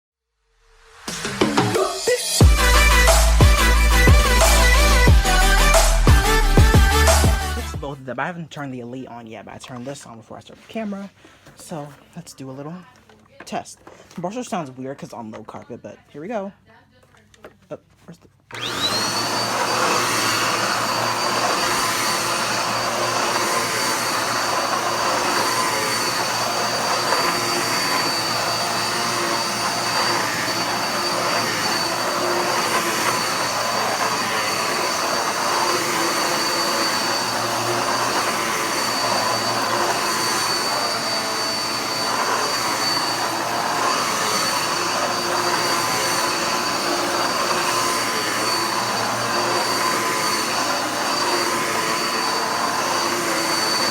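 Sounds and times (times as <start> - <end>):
vacuum cleaner running on carpet: 1.1 - 7.9, 18.5 - 53.9.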